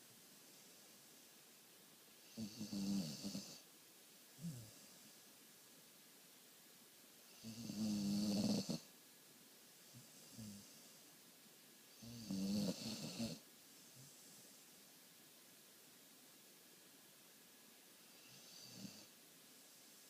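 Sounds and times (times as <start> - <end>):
dog snoring loudly: 2.2 - 3.6, 7.3 - 8.9, 12.0 - 13.4, 18.2 - 19.1.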